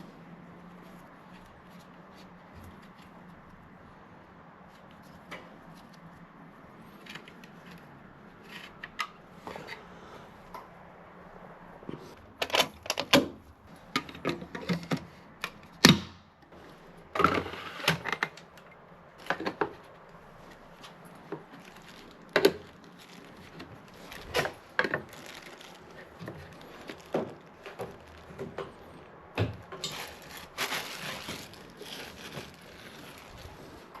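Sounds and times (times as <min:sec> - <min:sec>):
rustling scrape: 0:19.3 - 0:29.1, 0:29.8 - 0:34.0.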